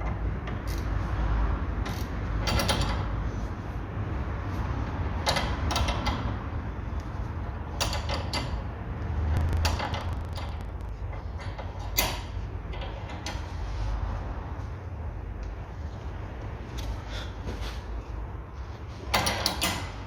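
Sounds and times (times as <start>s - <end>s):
steady low hum: 0.0s - 20.0s
ratchet wrench clicking: 0.6s - 0.9s, 1.8s - 3.2s.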